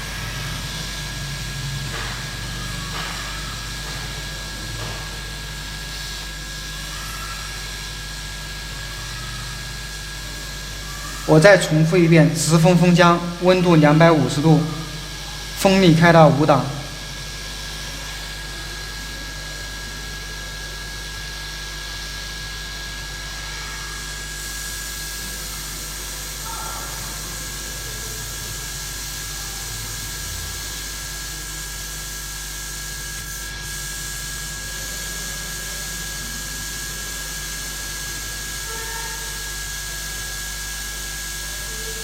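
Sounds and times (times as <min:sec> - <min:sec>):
hot air gun hissing: 0:30.9 - 0:35.6.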